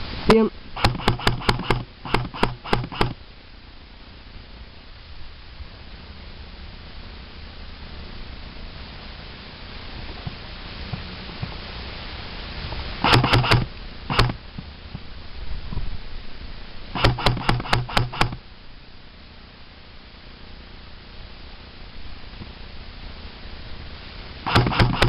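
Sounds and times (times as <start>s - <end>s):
airsoft gun shots: 0.8s - 3.2s, 13.0s - 14.4s, 17.0s - 18.4s, 24.4s - 25.0s.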